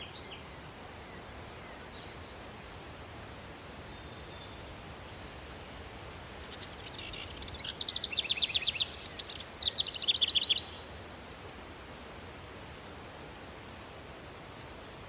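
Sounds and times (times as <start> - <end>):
low hiss of city background: 0.0 - 15.0
songbird trilling: 6.4 - 12.0.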